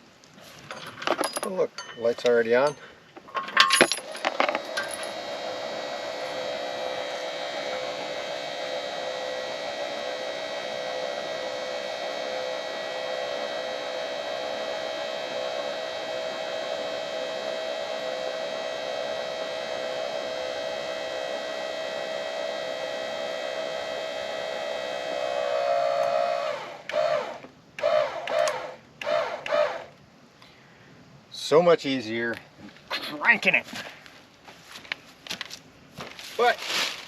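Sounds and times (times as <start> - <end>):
electric jack motor whining hum: 3.8 - 30.1.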